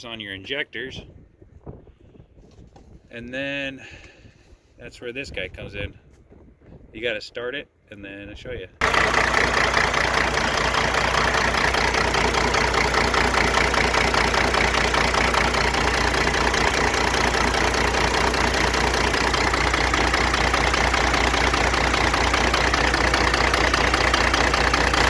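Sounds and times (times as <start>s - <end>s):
diesel engine idling: 8.8s - 25.0s
engine popping and pinging: 8.8s - 25.0s.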